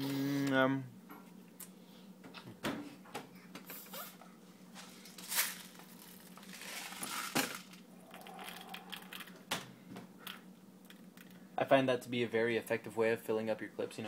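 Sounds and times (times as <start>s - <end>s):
plastic pellets poured into cup: 5.3s - 7.8s.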